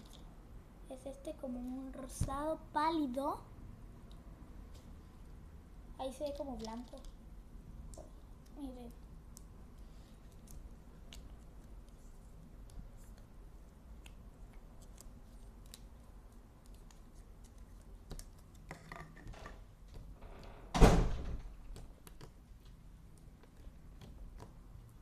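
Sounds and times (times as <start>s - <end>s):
loud thump: 20.7s - 21.4s.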